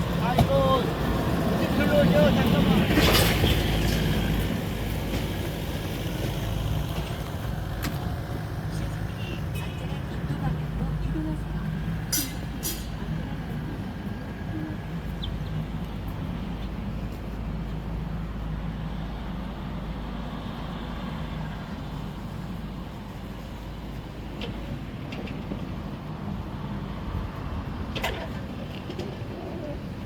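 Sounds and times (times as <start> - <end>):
city vehicle rumble: 0.0 - 30.0.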